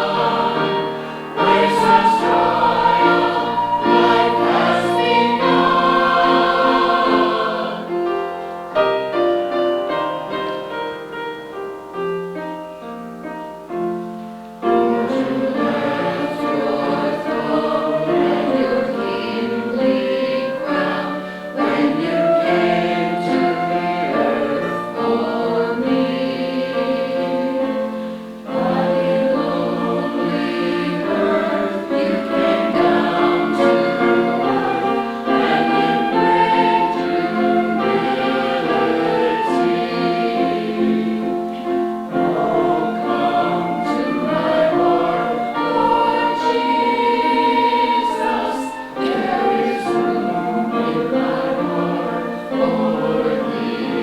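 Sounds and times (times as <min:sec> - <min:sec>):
choir singing in harmony: 0:00.0 - 0:11.3, 0:13.6 - 0:54.0.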